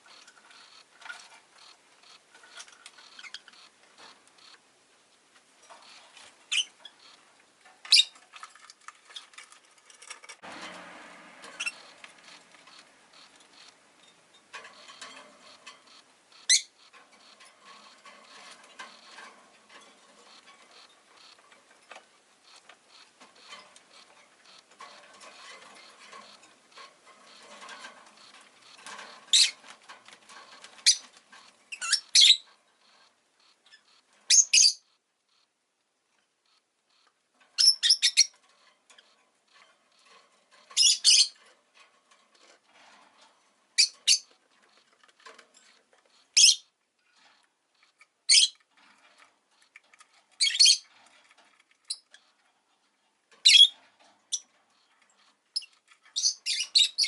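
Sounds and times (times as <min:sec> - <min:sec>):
lovebirds chirping: 0:05.8 - 0:07.2, 0:07.8 - 0:09.4, 0:11.5 - 0:26.4, 0:27.2 - 0:29.7, 0:30.6 - 0:35.0, 0:37.6 - 0:38.4, 0:40.6 - 0:41.4, 0:43.8 - 0:44.8, 0:45.6 - 0:46.8, 0:47.8 - 0:48.7, 0:49.6 - 0:51.0, 0:53.4 - 0:57.0.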